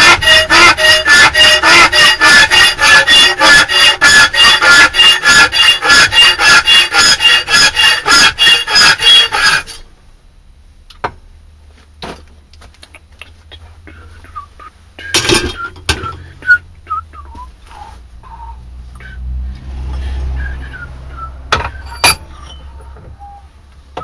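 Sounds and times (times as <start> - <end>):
hand file strokes: 0.0 - 9.8.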